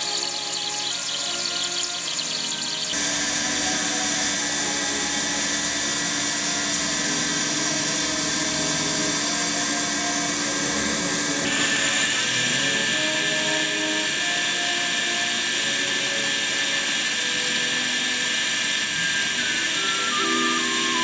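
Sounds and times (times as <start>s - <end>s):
lathe cutting metal: 0.0s - 21.0s.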